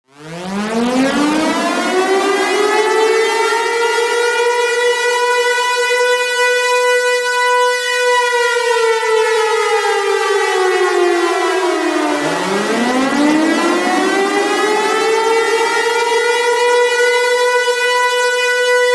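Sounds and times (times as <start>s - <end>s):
warning siren wailing: 0.1s - 18.9s.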